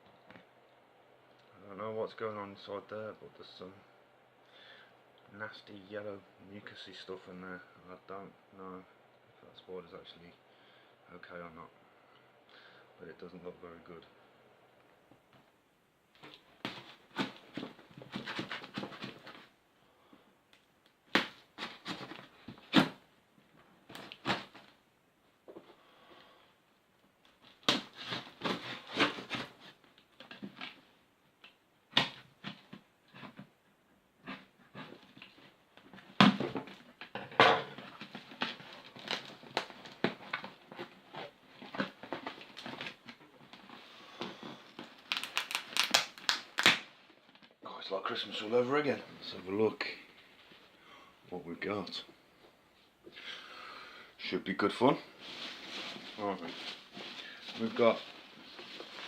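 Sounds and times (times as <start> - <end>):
plastic and cardboard crinkling: 16.2 - 19.5, 21.1 - 23.0, 27.2 - 33.5, 37.7 - 47.6, 54.8 - 59.0
containers being handled and set down: 36.1 - 38.2.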